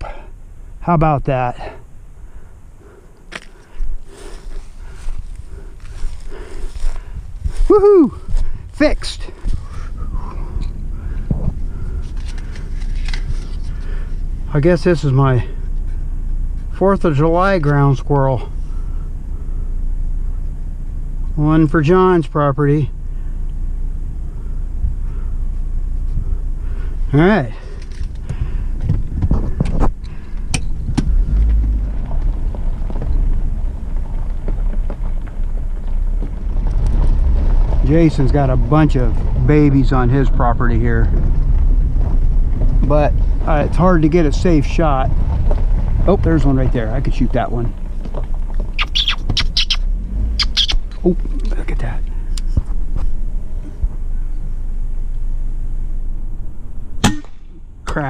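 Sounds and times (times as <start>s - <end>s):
vehicle engine and road rumble: 0.0s - 58.0s
air rifle shot: 57.0s - 57.5s.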